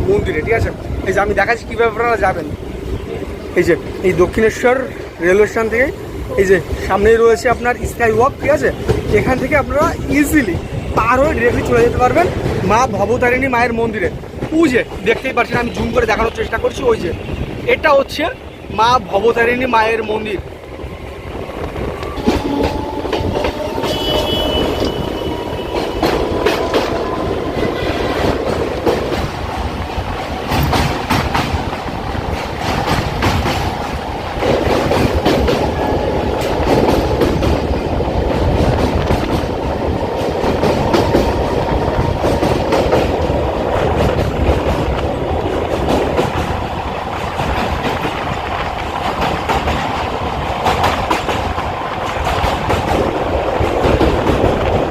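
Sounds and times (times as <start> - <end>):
train wheels clattering: 7.9 - 13.2, 20.6 - 54.9.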